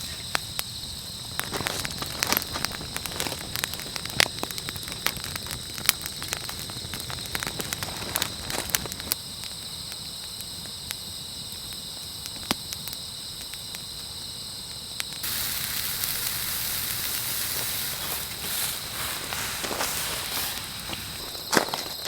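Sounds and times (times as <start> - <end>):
loud hiss: 0.0 - 3.4, 15.2 - 22.0
insects chirring: 0.0 - 22.0
wood fire crackling and popping: 0.0 - 22.0.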